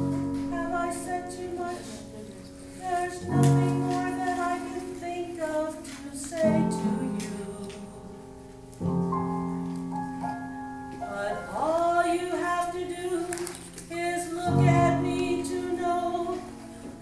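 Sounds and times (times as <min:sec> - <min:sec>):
piano chords: 0:00.0 - 0:17.0
woman singing: 0:00.1 - 0:08.3, 0:11.0 - 0:17.0.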